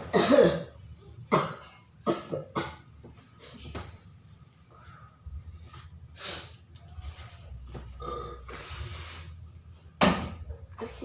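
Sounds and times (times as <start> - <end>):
person coughing phlegmy: 0.0 - 2.9.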